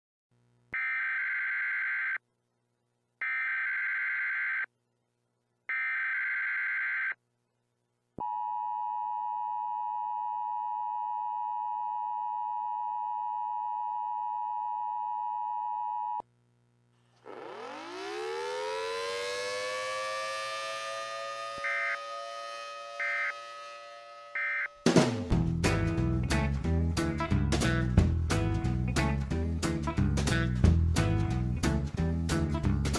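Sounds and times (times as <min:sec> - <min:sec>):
warning siren winding up: 0:17.1 - 0:24.9.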